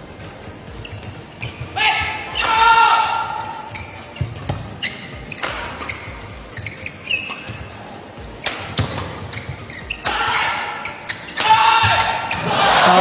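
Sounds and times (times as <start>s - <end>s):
shoes squeaking on court: 0.0s - 2.6s, 3.3s - 12.6s
crowd noise: 0.0s - 13.0s
rackets striking shuttlecock: 2.3s - 2.7s, 4.2s - 7.6s, 8.4s - 12.4s.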